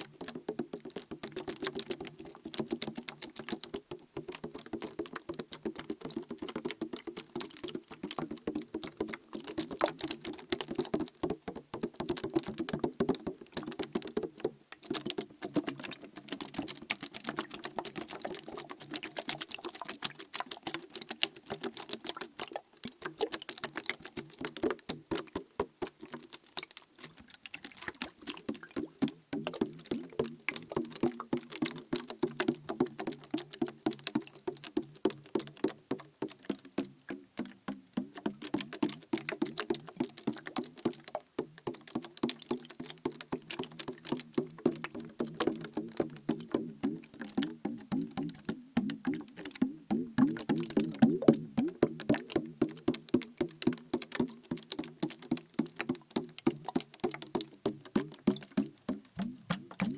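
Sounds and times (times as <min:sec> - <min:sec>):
liquid sloshing in bottle: 0:44.0 - 0:54.7, 0:56.8 - 0:59.9.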